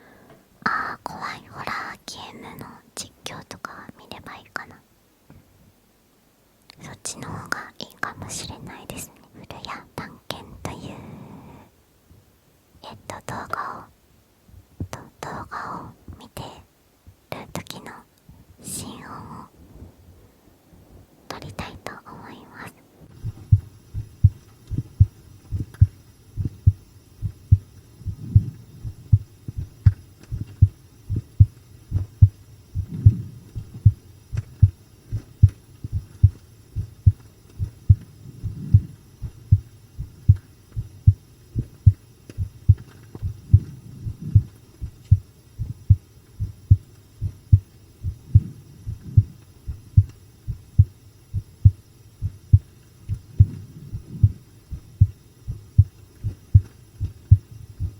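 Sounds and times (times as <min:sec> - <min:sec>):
heartbeat thuds: 0:23.1 - 0:57.9.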